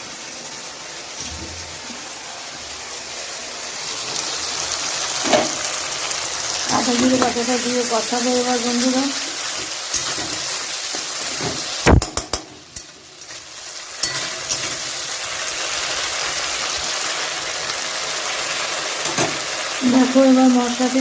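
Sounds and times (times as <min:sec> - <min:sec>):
paste sizzling in hot oil: 0:01.1 - 0:21.0
spatula knocking against pan: 0:12.0 - 0:12.6.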